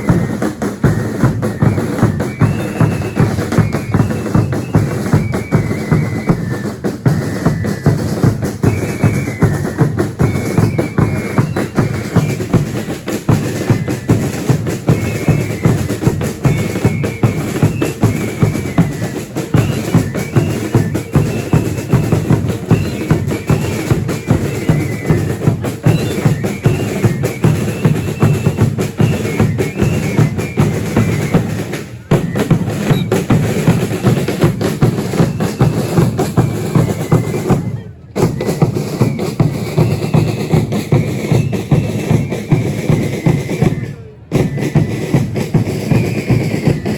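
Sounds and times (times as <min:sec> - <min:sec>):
drums beating march rhythm: 0:00.0 - 0:46.9
high piped melody: 0:15.1 - 0:33.9.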